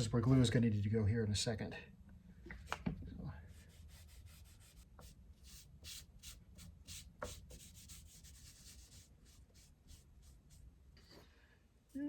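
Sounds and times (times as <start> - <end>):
rag rubbing on wood: 3.8 - 10.6.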